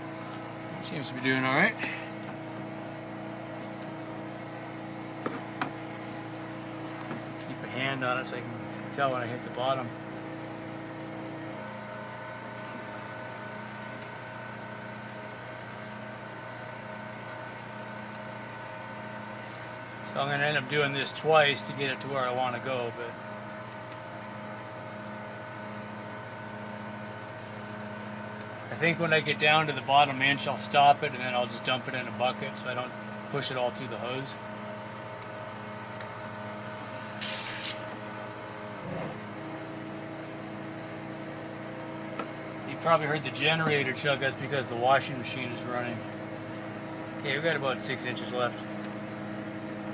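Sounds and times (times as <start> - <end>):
electric pump running: 0.0 - 49.9
generator hum: 0.0 - 49.9
short hiss: 37.2 - 37.9.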